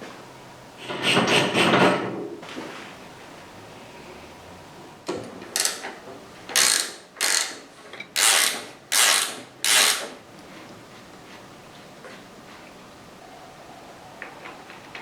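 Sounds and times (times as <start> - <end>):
ratchet wrench clicking: 6.6 - 7.6, 8.2 - 10.1.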